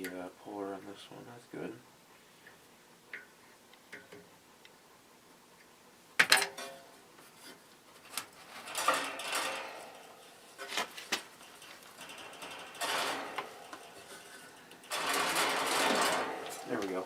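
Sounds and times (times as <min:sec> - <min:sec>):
metal clinks and scraping: 0:08.4 - 0:17.0
sharp metal clank: 0:12.0 - 0:16.9.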